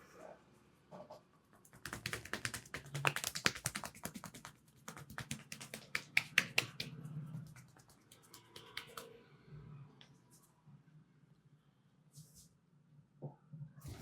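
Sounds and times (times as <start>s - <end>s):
hands tapping on a head: 1.6s - 9.1s.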